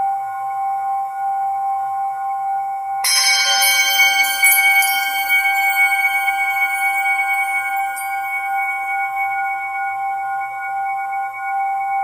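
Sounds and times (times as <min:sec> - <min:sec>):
ambient bell-like drone: 0:03.0 - 0:12.0.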